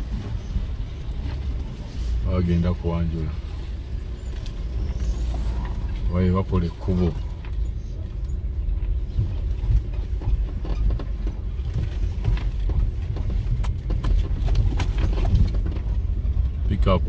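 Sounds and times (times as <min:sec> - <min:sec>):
vehicle engine and tyres rumbling: 0:00.0 - 0:17.0
knocks and rattles: 0:09.6 - 0:16.0.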